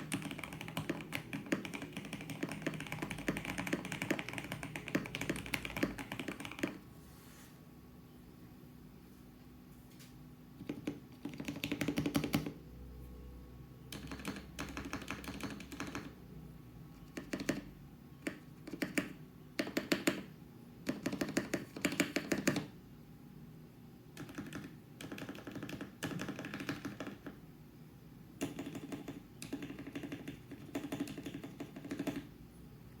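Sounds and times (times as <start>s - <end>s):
fast mechanical keyboard typing: 0.0s - 6.8s, 10.6s - 12.6s, 13.9s - 16.2s, 17.1s - 22.7s, 24.1s - 27.4s, 28.4s - 32.3s.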